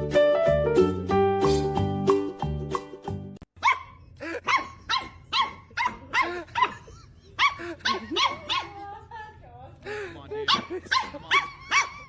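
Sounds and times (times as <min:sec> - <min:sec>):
background music: 0:00.0 - 0:03.4
dog barking: 0:03.6 - 0:08.8, 0:10.5 - 0:12.0.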